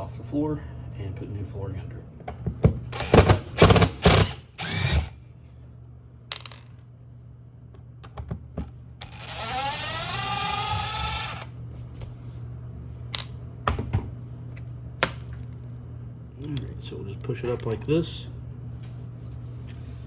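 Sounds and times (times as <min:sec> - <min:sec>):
power drill whine: 0:03.0 - 0:05.1, 0:09.0 - 0:11.5.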